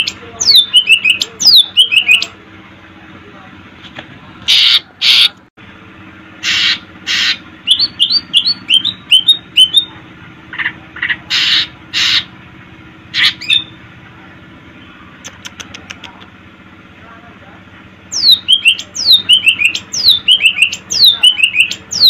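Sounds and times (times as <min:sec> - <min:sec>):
bird singing harsh scratchy notes: 0:06.4 - 0:09.9, 0:18.1 - 0:22.0.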